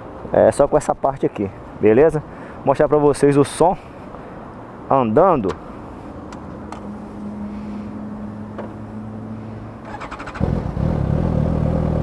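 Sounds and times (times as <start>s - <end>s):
motorcycle engine: 9.8s - 12.0s.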